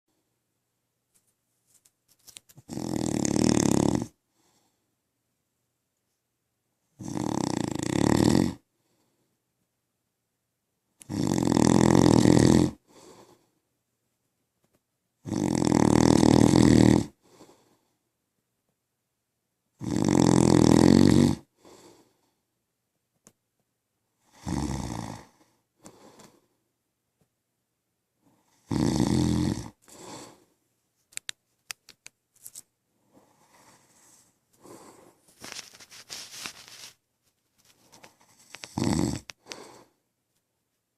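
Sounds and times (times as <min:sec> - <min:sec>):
man snoring: 0:02.7 - 0:04.2, 0:07.0 - 0:08.6, 0:11.0 - 0:13.2, 0:15.2 - 0:17.4, 0:19.8 - 0:21.5, 0:24.3 - 0:25.4, 0:28.5 - 0:30.4, 0:38.5 - 0:39.9
faint breath: 0:04.3 - 0:05.0, 0:08.7 - 0:09.4, 0:12.8 - 0:13.6, 0:17.2 - 0:18.0, 0:21.5 - 0:22.5, 0:25.2 - 0:26.6, 0:29.8 - 0:30.6, 0:33.0 - 0:36.3, 0:39.4 - 0:40.1.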